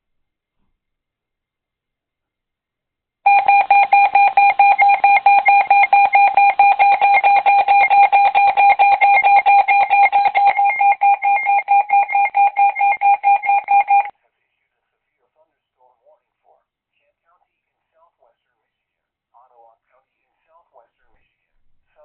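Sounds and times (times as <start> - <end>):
pulsing electronic alert tone: 3.3 - 14.1.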